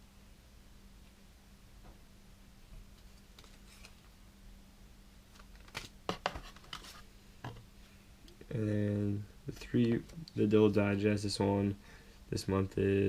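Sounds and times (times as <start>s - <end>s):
low steady hum: 0.0s - 13.0s
paper rustling: 2.9s - 4.1s, 5.3s - 7.1s
clicks and crinkles: 2.9s - 4.2s, 5.3s - 7.6s.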